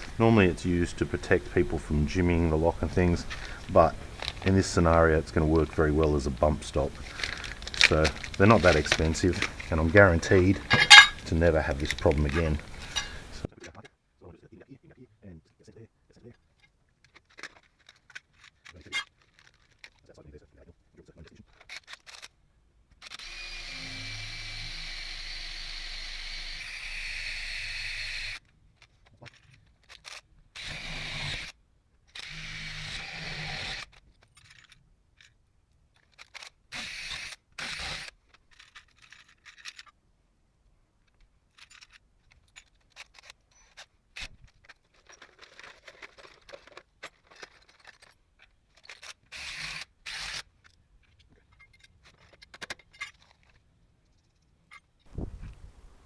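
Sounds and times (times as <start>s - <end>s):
metal hardware clicks and scrapes: 0.0s - 13.9s, 16.2s - 20.2s, 28.8s - 30.7s, 33.6s - 40.0s, 41.1s - 55.1s
power drill drilling: 23.0s - 28.4s, 30.6s - 31.6s, 32.2s - 33.9s, 36.7s - 38.2s, 49.3s - 50.4s.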